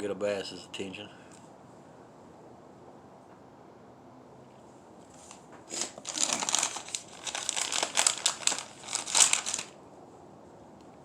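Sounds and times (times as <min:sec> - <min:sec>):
plastic packaging crinkling: 0:05.2 - 0:09.8.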